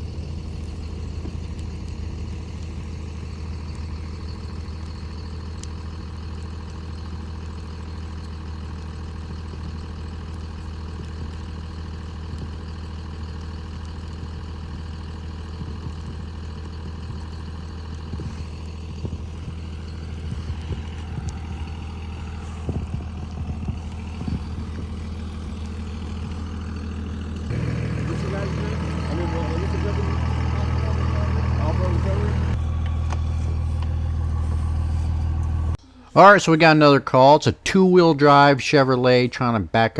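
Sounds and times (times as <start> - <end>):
truck engine idling: 0.0 - 39.9
knocks and clunks: 14.1 - 34.0.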